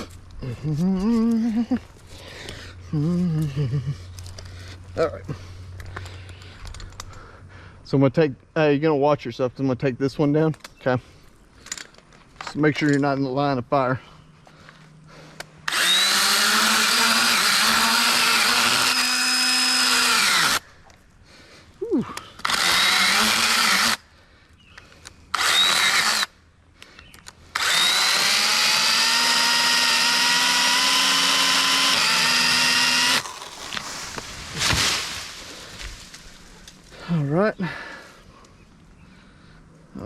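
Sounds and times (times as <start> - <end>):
electric saw whining: 15.7 - 20.6, 22.4 - 24.0, 25.3 - 26.3, 27.5 - 34.3.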